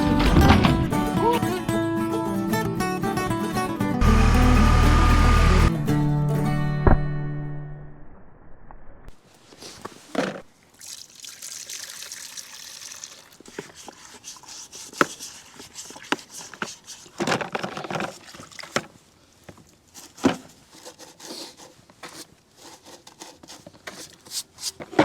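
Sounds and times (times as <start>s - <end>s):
liquid trickling and pouring: 10.6s - 16.2s, 18.0s - 18.9s.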